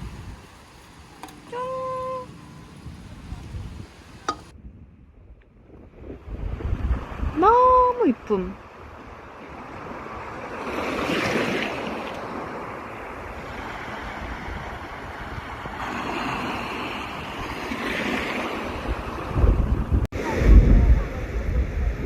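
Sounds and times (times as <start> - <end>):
wind buffeting microphone: 0.0 - 1.5, 2.3 - 22.0
sea waves washing onto shore: 6.2 - 19.6.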